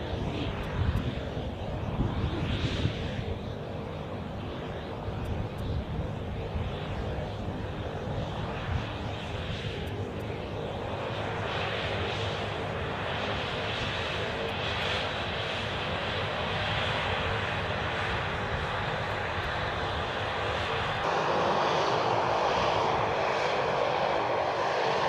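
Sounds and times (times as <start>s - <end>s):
turboprop engine drone: 0.0s - 25.0s.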